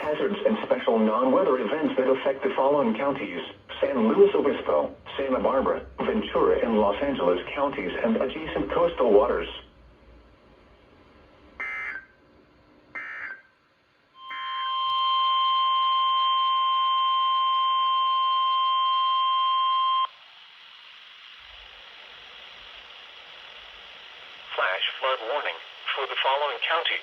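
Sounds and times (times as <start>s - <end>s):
radio static hiss: 0.0s - 9.7s, 20.0s - 27.0s
steady warning alarm tone: 11.6s - 12.2s, 13.0s - 13.5s, 14.2s - 27.0s
digital data bursts: 20.0s - 27.0s.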